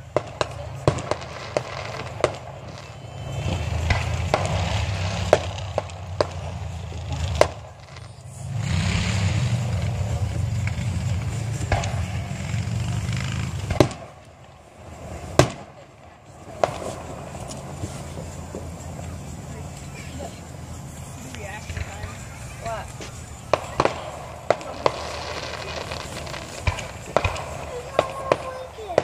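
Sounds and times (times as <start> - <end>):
fireworks bangs and pops: 0.0 - 29.0
low rumbling noise: 0.0 - 29.0.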